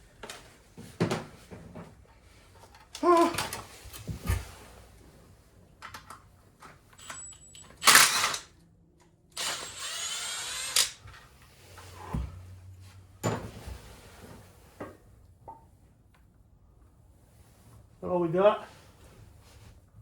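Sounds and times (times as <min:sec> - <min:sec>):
power tool burst: 0:07.8 - 0:08.5, 0:09.4 - 0:11.0.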